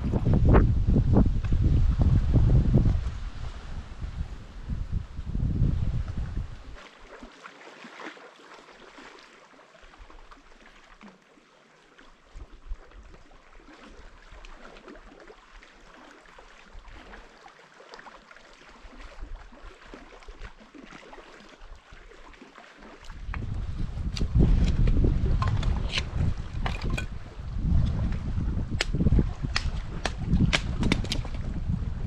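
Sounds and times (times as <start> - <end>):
water lapping: 1.5 - 32.0
small water splashes and drips: 6.1 - 31.6.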